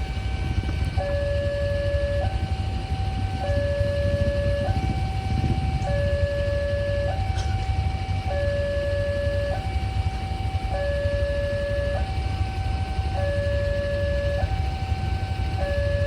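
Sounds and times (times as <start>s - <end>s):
low rumble: 0.0s - 8.2s
two-tone crossing alarm: 0.0s - 16.0s.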